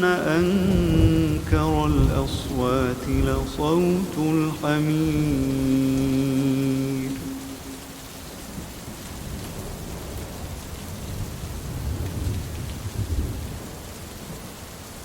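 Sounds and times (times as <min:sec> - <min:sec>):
low rumble of thunder: 0:00.0 - 0:15.0
steady rain falling: 0:00.0 - 0:15.0.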